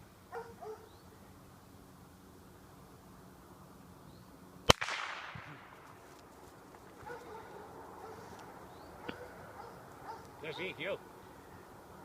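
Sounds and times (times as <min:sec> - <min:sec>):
sharp shot-like crack with echo: 0:04.7 - 0:05.8.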